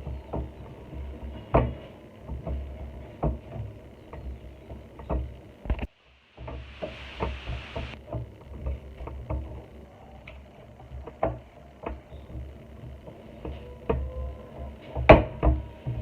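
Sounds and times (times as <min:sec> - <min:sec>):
short hiss: 0:06.0 - 0:08.0.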